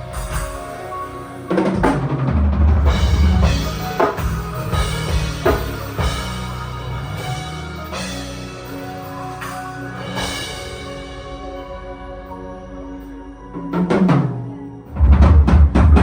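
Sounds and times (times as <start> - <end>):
drum kit playing: 0.0 - 11.7, 13.6 - 16.0
live band music: 0.0 - 12.8.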